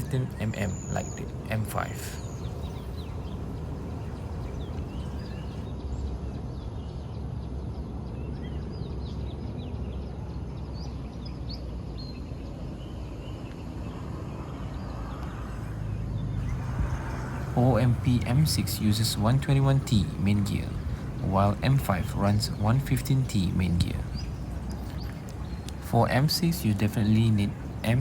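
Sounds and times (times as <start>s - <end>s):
high bird chirps: 0.0s - 5.7s.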